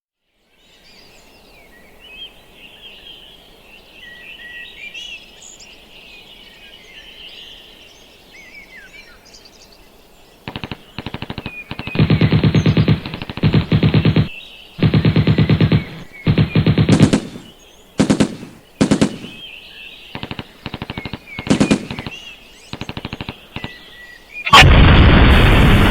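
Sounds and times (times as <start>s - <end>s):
background hiss: 0.2s - 25.9s
birds chirping and singing: 0.6s - 24.6s
machine-gun fire: 10.5s - 19.5s, 20.2s - 23.8s, 24.5s - 25.9s.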